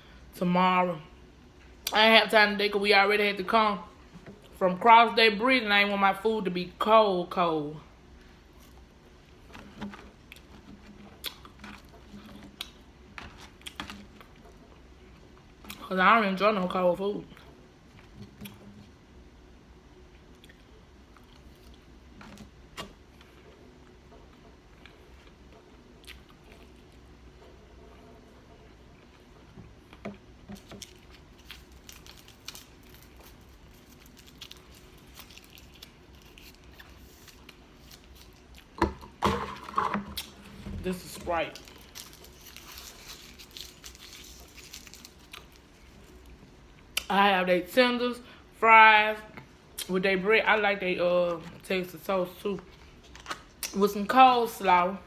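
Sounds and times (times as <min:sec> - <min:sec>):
chewing crunchy fried chicken: 0:28.7 - 0:38.8, 0:41.6 - 0:47.1.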